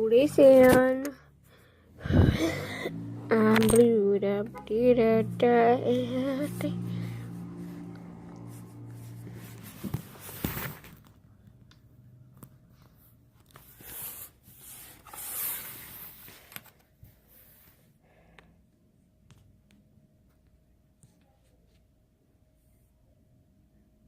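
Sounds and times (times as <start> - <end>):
rustling and scraping handling noise: 8.4 - 11.2, 12.4 - 17.9.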